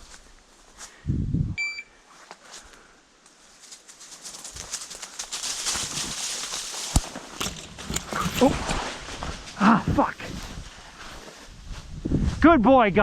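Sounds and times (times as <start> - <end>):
short electronic beep: 1.6 - 1.9
footsteps crunching dry leaves: 3.4 - 9.6.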